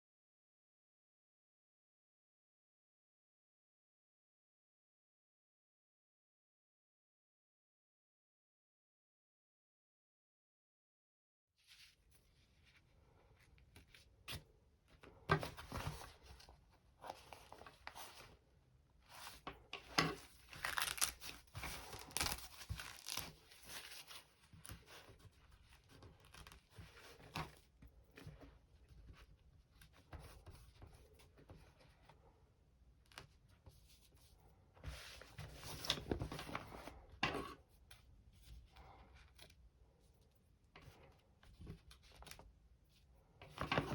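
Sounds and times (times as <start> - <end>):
stabiliser rustling and tearing: 19.9 - 24.8.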